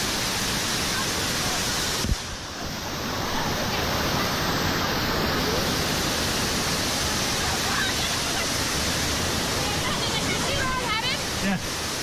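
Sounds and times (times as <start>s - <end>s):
rushing river water: 0.0s - 12.0s.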